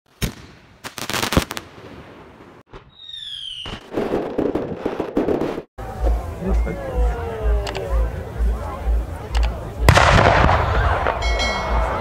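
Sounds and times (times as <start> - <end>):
fireworks crackling: 0.1 - 6.3, 9.8 - 11.3
fireworks bangs: 0.2 - 5.7, 9.9 - 11.4
firework whistle falling: 2.8 - 3.9.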